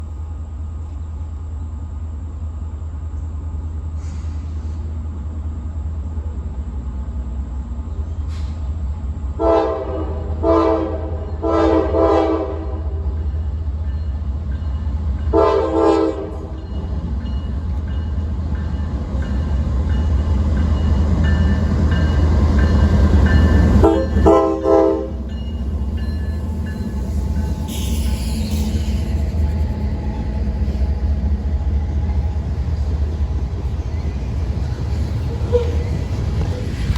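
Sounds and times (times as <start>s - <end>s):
passing train rumble: 0.0s - 36.9s
locomotive horn blasts: 9.4s - 13.0s, 15.3s - 16.5s, 23.8s - 25.2s, 35.3s - 35.9s.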